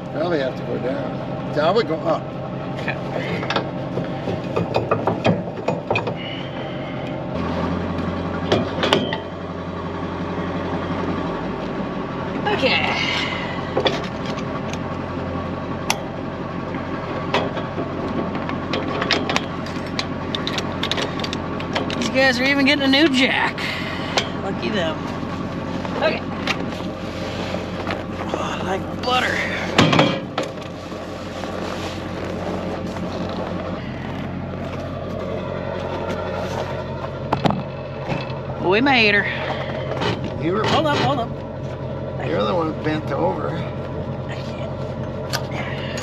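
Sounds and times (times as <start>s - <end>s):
engine idling: 0.0s - 46.0s
sharp clicks and knocks: 3.5s - 6.2s.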